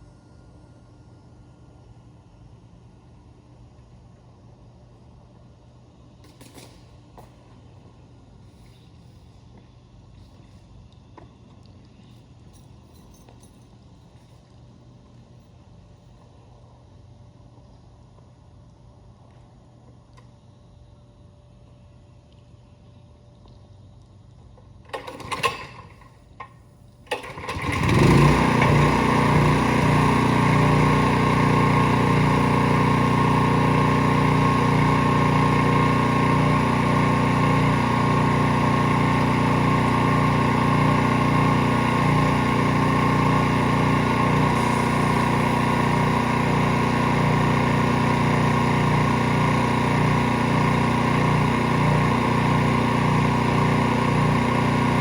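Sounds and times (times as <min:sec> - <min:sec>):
small petrol engine running: 0:24.9 - 0:26.0, 0:27.1 - 0:55.0.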